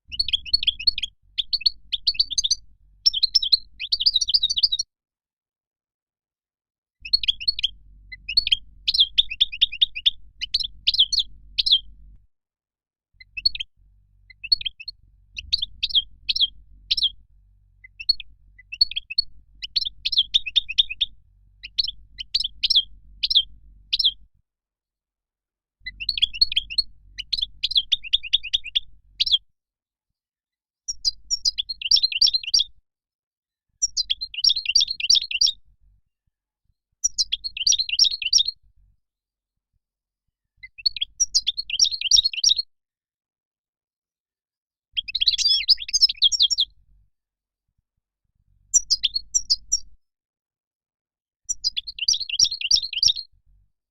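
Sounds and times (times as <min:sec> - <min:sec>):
bird twittering song: 0:00.0 - 0:04.9, 0:07.0 - 0:12.0, 0:13.2 - 0:24.3, 0:25.8 - 0:29.4, 0:30.9 - 0:32.7, 0:33.8 - 0:35.6, 0:37.0 - 0:38.6, 0:40.6 - 0:42.7, 0:44.9 - 0:46.8, 0:48.7 - 0:49.9, 0:51.5 - 0:53.3.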